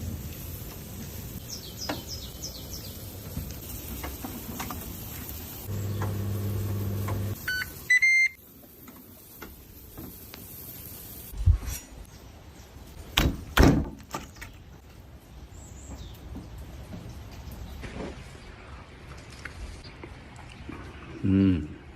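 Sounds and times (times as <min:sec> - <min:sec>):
kitchen appliance humming: 0:05.7 - 0:08.2
electronic beeps: 0:07.4 - 0:08.4.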